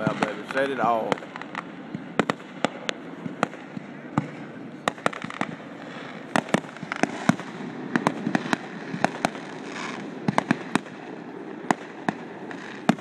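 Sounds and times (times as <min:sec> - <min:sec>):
fireworks bangs and cracks: 0:00.0 - 0:13.0
steady background hiss: 0:00.0 - 0:13.0.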